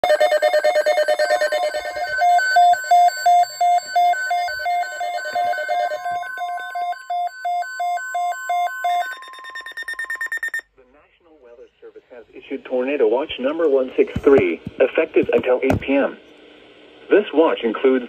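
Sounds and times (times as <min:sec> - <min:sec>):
fast repeated alarm beeps: 0:00.0 - 0:10.7
steady warning alarm tone: 0:00.0 - 0:10.7.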